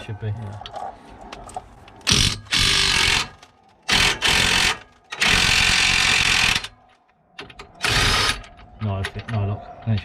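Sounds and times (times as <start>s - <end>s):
power tool rattling: 2.1s - 6.7s.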